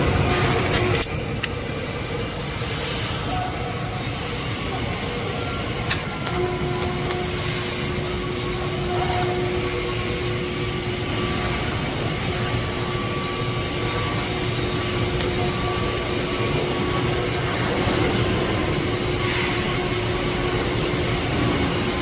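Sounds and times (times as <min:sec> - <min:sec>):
constant hum: 0:00.0 - 0:22.0
welding arc hissing: 0:00.0 - 0:22.0.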